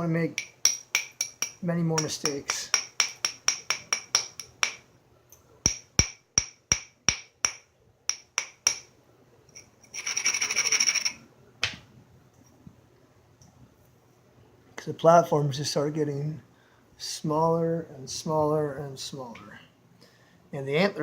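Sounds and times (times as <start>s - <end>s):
antler tool clicking on stone: 0.4s - 4.8s.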